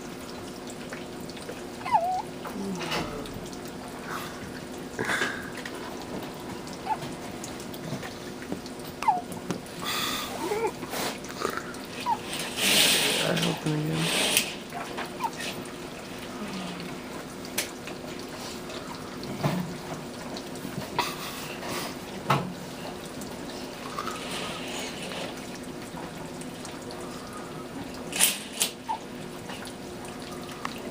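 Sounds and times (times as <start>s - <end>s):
baby hiccuping: 1.8s - 2.2s, 9.0s - 9.3s.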